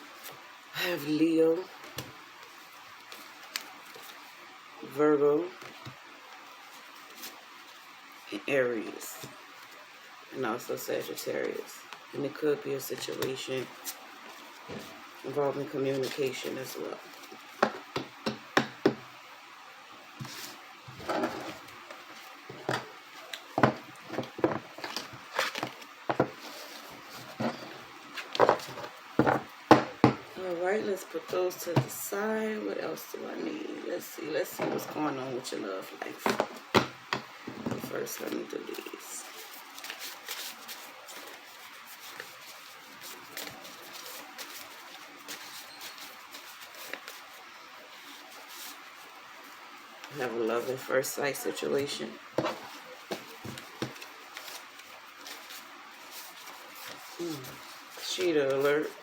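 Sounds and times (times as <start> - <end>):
cards sliding rub: 20.2 - 20.7, 39.2 - 49.2, 52.4 - 58.4.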